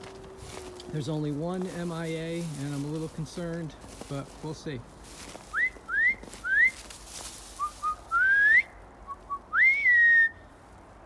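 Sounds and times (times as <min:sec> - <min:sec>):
person whistling calls: 0:05.5 - 0:06.8, 0:07.6 - 0:10.4.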